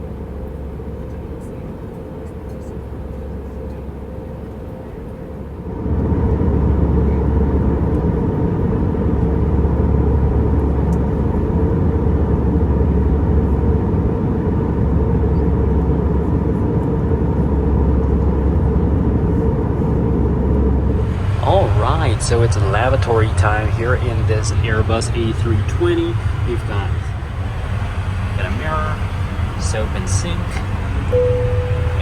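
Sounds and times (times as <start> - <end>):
engine and airflow rumble: 0.0 - 32.0
faint steady hum: 17.4 - 32.0.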